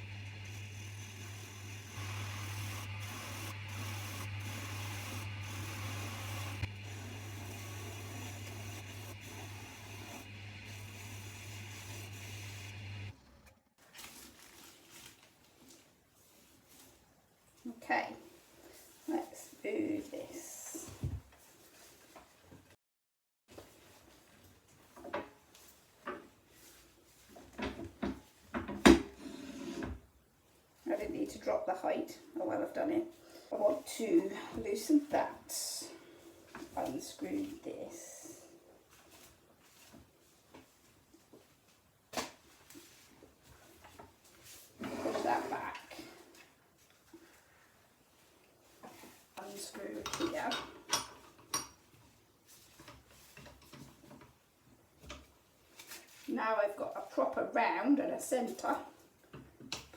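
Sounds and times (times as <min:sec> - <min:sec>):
turning tool scraping wood: 0:00.0 - 0:13.1, 0:29.1 - 0:30.0, 0:44.7 - 0:46.2
wood lathe motor hum: 0:00.0 - 0:13.2.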